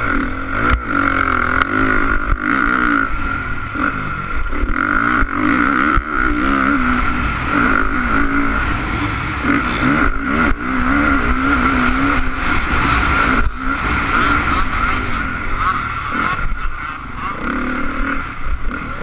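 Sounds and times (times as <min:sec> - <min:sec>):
motocross engine revving: 0:00.0 - 0:19.0.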